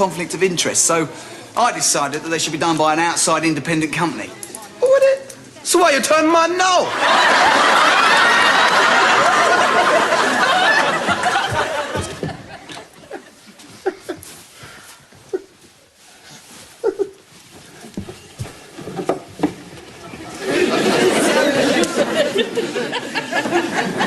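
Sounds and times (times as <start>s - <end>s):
studio audience laughing: 6.9s - 13.4s, 20.3s - 24.0s.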